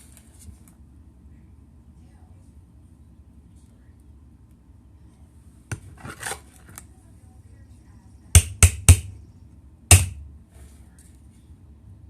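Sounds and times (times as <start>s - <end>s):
knocks on a dish: 8.4s - 9.1s, 9.9s - 10.2s.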